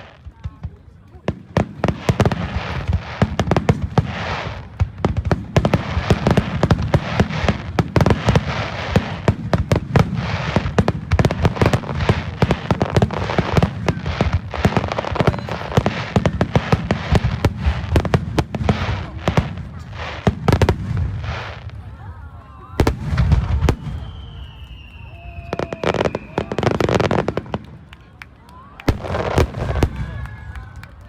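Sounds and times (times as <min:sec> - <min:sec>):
firework crackle: 0:00.0 - 0:31.0
firework shells booming: 0:22.8 - 0:27.6.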